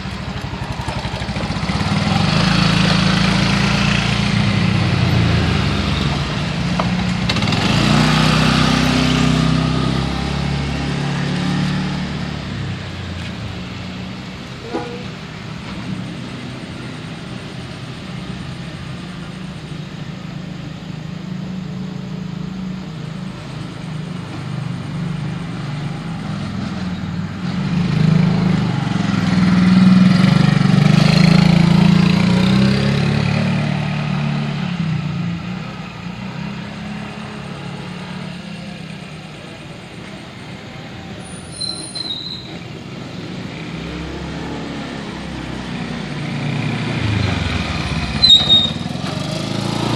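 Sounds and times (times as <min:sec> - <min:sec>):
vehicle passing close: 0:00.0 - 0:19.7, 0:20.4 - 0:41.2, 0:42.5 - 0:49.9
vehicle engines running: 0:00.0 - 0:49.9.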